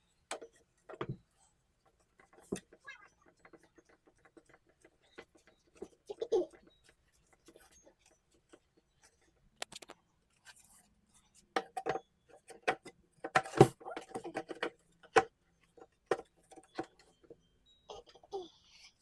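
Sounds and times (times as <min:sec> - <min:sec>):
parts knocking and clinking: 0:11.5 - 0:17.4.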